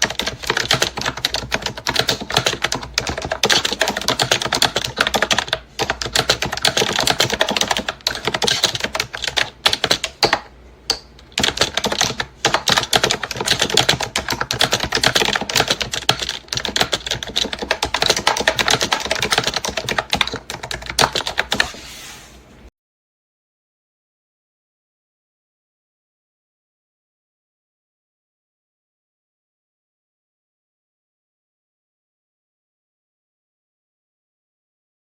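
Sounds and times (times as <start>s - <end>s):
fast keyboard typing: 0.0s - 21.8s.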